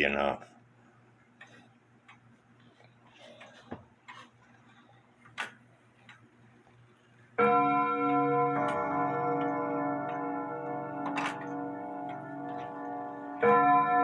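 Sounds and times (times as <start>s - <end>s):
clock striking with ringing: 7.4s - 14.0s
clock clicks: 11.0s - 13.6s.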